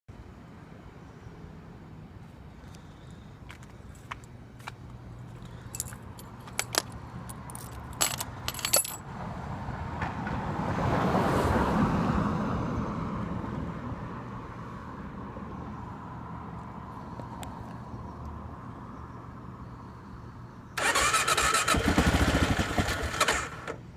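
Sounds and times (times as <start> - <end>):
keys jingling: 5.4 - 9.0.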